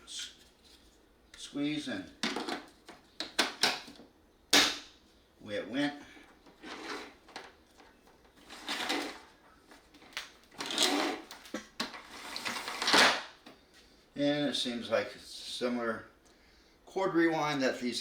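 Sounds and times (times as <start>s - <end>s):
vacuum cord reel whirring: 6.5s - 7.5s, 8.4s - 9.3s, 10.5s - 13.2s.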